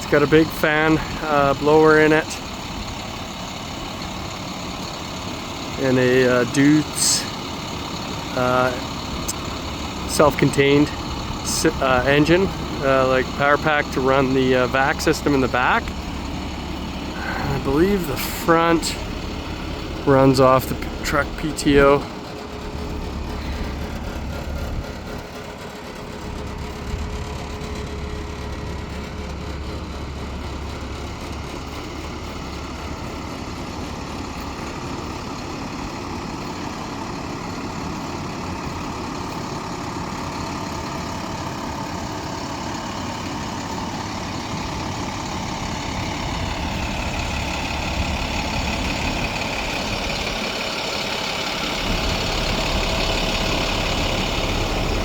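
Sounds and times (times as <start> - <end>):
truck diesel engine idling: 0.0 - 55.0.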